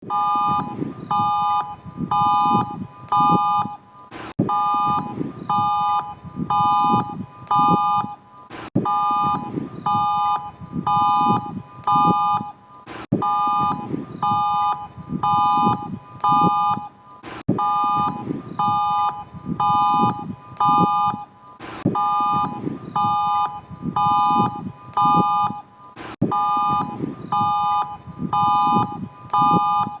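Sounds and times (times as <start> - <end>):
alert tone beeps: 0.0 - 3.8, 4.4 - 8.2, 8.8 - 12.6, 13.2 - 21.3, 21.9 - 30.0
low rumbling noise: 4.4 - 8.0, 8.8 - 16.7.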